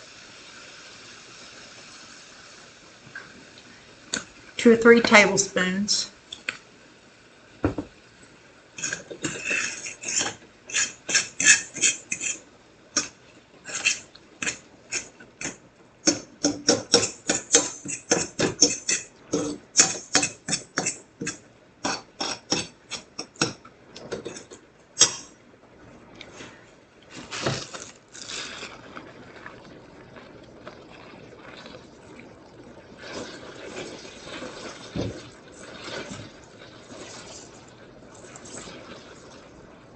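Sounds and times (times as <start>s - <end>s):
utensil scraping a frying pan: 8.8s - 12.4s, 13.0s - 25.3s, 33.0s - 37.6s.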